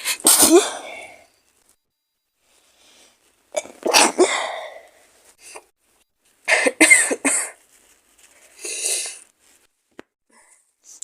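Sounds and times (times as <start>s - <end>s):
woman coughing: 0.0s - 0.9s, 3.6s - 4.6s, 6.5s - 7.6s.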